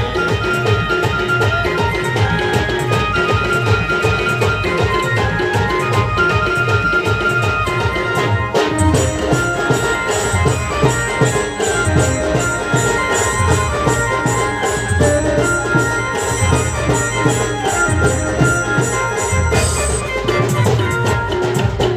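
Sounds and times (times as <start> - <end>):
driving drum beat: 0.0 - 21.9
jingling percussion: 0.0 - 21.9
sustained melody line: 8.6 - 20.9.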